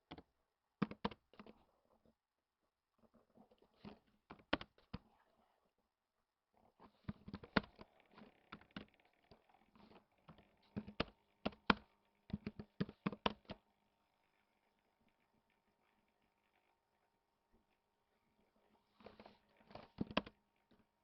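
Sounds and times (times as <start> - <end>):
typing on a keyboard: 0.8 - 1.5, 4.3 - 5.0, 7.1 - 9.6, 10.3 - 13.6, 19.2 - 20.4.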